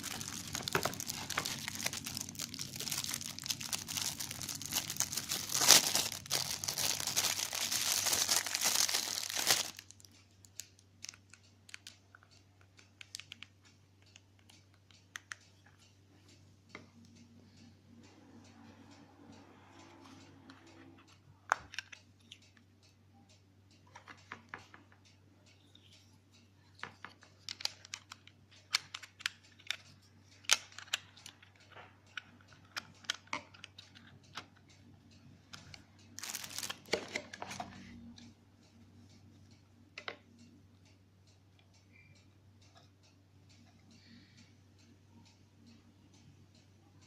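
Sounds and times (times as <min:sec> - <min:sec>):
rustling: 0:00.0 - 0:10.0.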